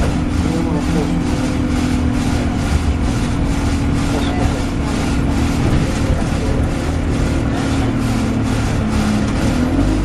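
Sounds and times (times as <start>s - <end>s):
bus engine running: 0.0s - 10.0s.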